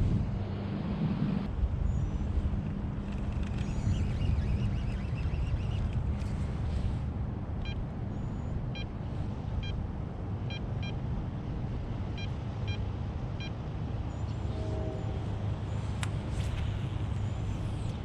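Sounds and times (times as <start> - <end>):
steady low rumble: 0.0 - 14.4.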